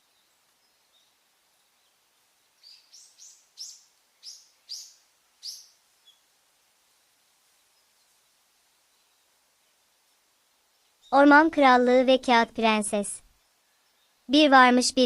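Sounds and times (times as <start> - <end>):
small bird chirping: 0.0 - 6.3, 10.5 - 11.4.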